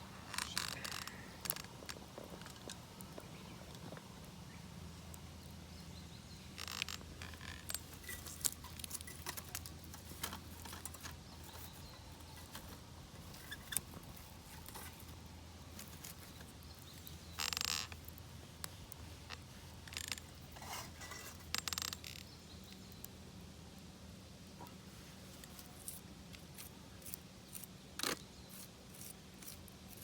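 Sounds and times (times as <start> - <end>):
twig fire crackling and popping: 0.2 - 5.7.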